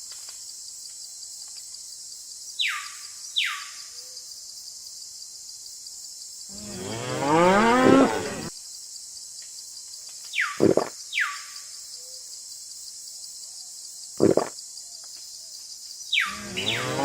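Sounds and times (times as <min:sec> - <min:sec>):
cow mooing: 0:06.6 - 0:08.5, 0:16.3 - 0:17.0.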